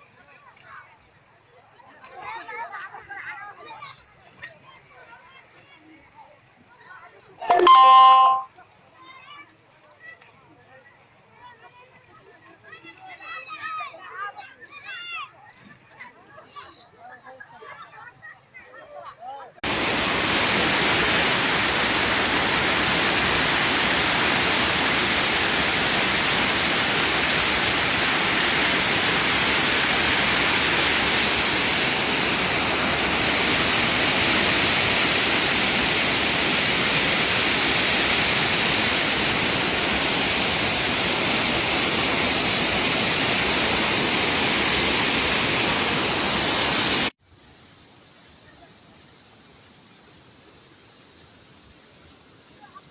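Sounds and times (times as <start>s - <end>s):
water rushing in a torrent: 19.6s - 47.1s.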